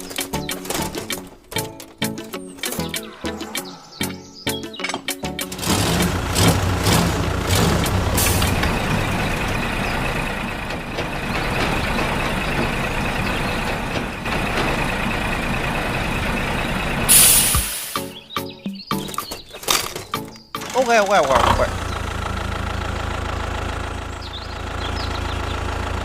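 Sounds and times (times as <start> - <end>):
machine whining: 2.6 - 18.0
short loud hiss: 17.1 - 18.1.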